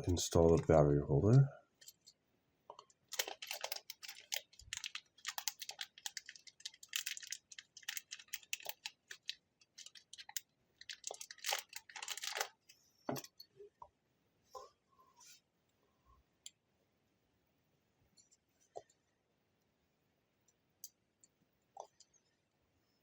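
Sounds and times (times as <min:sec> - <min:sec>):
light clicks and crinkling: 0:01.8 - 0:13.9.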